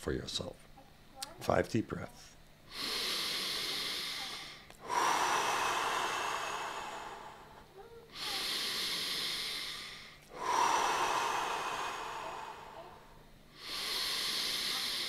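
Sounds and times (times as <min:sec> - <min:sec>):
person breathing deeply: 0:02.7 - 0:15.0.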